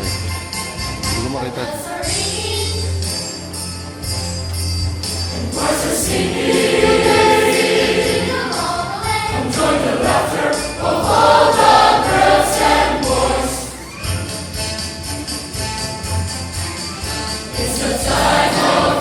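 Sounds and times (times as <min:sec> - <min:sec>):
instrumental accompaniment: 0:00.0 - 0:19.0
choir singing a christmas song: 0:01.5 - 0:03.3, 0:05.3 - 0:14.2, 0:17.0 - 0:19.0
choir singing: 0:05.3 - 0:13.9, 0:17.1 - 0:19.0.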